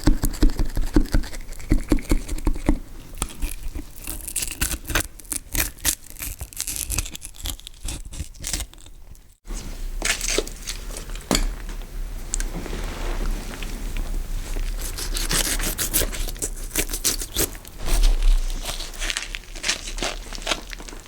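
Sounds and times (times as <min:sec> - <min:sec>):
knife cutting into carcass: 0:14.7 - 0:20.4.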